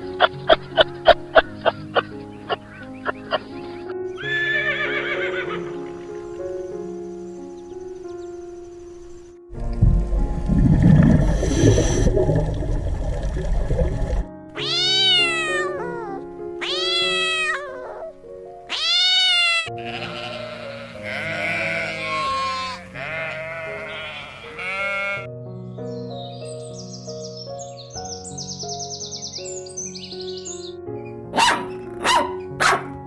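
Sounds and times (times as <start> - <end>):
background music: 0.0 - 33.0
low rumbling noise: 9.5 - 14.3.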